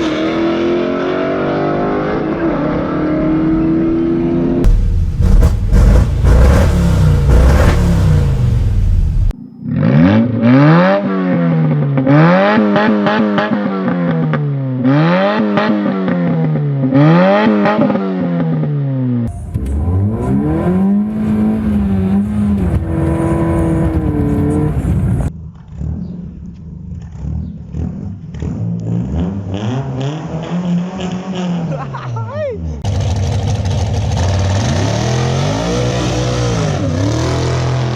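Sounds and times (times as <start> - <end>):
car engine revving: 0.0 - 18.6, 19.3 - 31.8
exhaust crackles: 4.6 - 9.4, 19.3 - 29.1.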